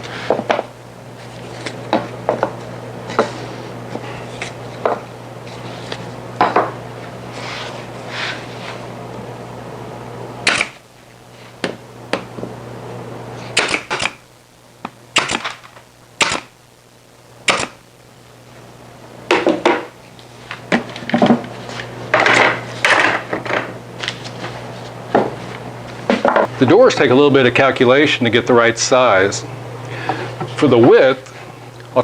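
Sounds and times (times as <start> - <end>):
wood and tools knocking on workbench: 1.9 - 2.6, 4.8 - 5.0, 6.4 - 6.8, 19.3 - 19.9, 22.1 - 23.7, 25.1 - 25.4, 26.1 - 26.5.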